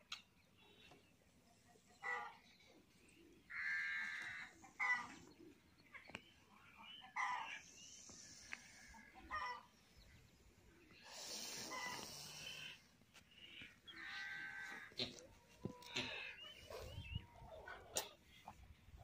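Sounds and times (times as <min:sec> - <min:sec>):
chickens clucking: 0:00.9 - 0:03.4, 0:04.5 - 0:12.5, 0:14.7 - 0:18.8.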